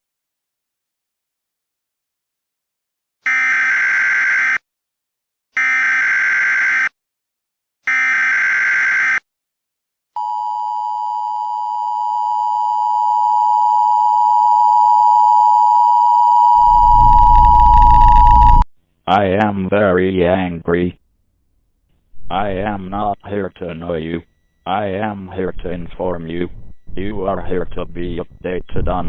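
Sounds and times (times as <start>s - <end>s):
two-tone attention signal: 10.2s - 18.6s
data burst signal: 15.2s - 18.6s
low rumbling noise: 16.6s - 18.6s, 22.2s - 23.2s.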